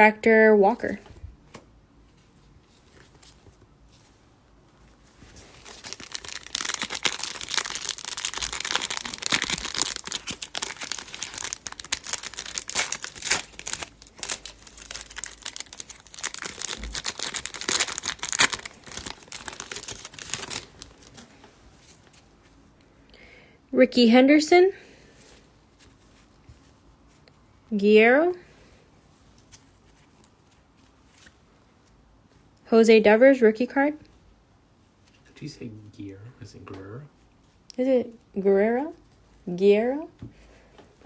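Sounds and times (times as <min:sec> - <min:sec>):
plastic wrapper crinkling and tearing: 0:05.3 - 0:21.3.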